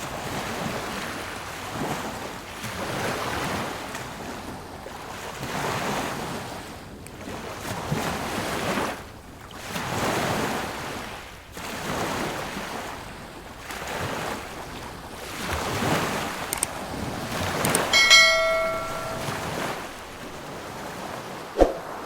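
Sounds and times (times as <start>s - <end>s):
bell ringing: 17.8s - 20.3s.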